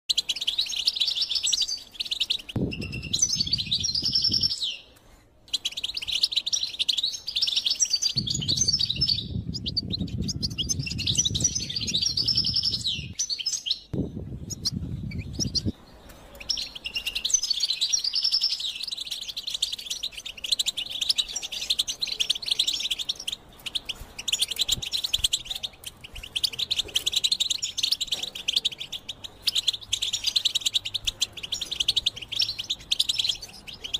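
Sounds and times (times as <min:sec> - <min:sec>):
bird twittering song: 0:00.1 - 0:33.9
low rumble: 0:08.2 - 0:13.1.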